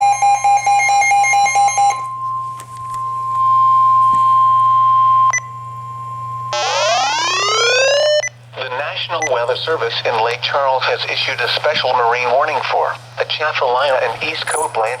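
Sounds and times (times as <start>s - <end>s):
high alarm tone: 0.0s - 8.4s
rising electronic sweep: 6.5s - 8.2s.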